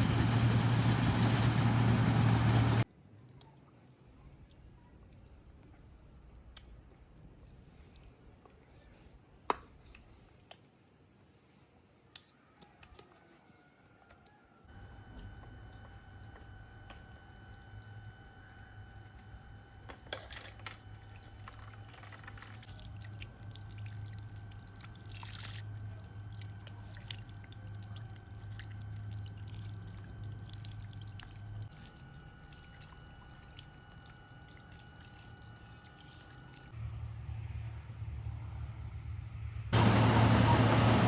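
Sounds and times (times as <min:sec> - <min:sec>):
low steady hum: 0:14.7 - 0:41.0
water pouring and trickling: 0:21.0 - 0:36.8.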